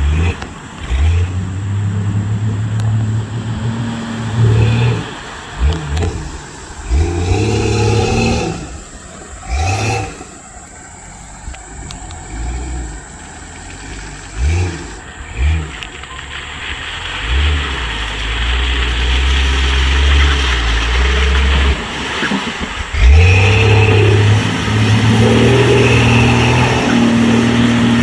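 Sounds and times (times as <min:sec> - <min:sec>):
off-road vehicle engine revving: 0:00.0 - 0:28.0.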